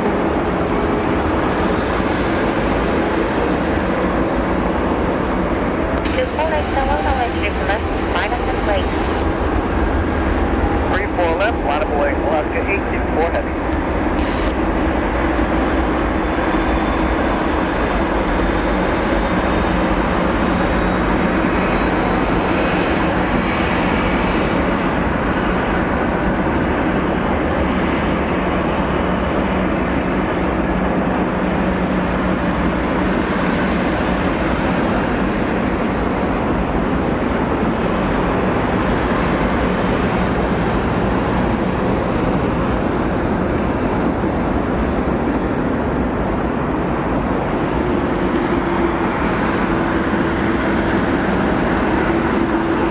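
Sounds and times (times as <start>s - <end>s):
jet engines running: 0.0s - 52.9s
faint high whine: 2.5s - 9.7s, 10.4s - 15.0s.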